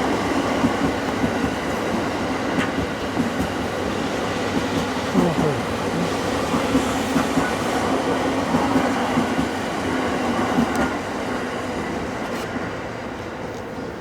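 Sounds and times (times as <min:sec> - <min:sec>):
train coaches rolling on rails: 0:00.0 - 0:14.0.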